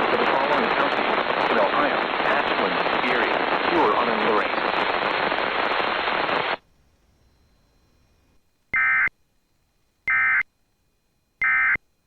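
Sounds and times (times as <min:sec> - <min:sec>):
radio hiss: 0:00.0 - 0:08.2.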